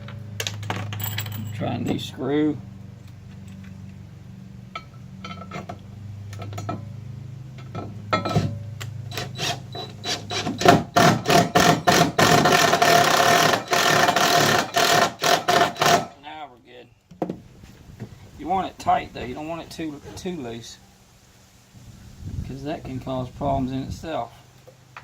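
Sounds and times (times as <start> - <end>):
power drill driving a screw: 9.1 - 16.1.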